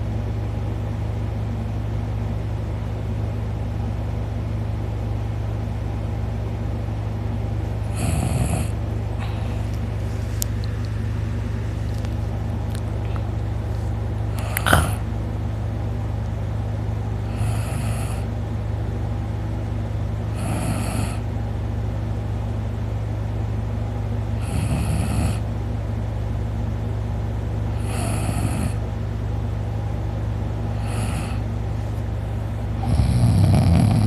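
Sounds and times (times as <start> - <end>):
steady low hum: 0.0 - 34.0
man snoring: 7.9 - 9.4, 14.4 - 15.0, 17.2 - 18.3, 20.3 - 21.3, 24.4 - 25.5, 27.7 - 28.8, 30.7 - 31.5, 32.8 - 34.0.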